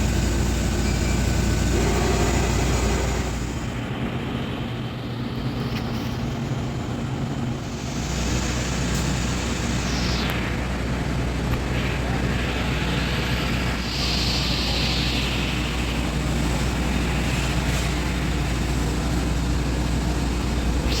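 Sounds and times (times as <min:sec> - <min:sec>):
welder electrical hum: 0:00.0 - 0:21.0
welder hiss: 0:07.5 - 0:10.5, 0:12.6 - 0:19.9.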